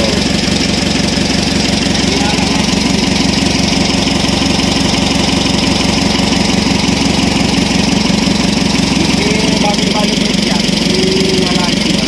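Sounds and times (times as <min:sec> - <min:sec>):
diesel engine idling: 0:00.0 - 0:12.0.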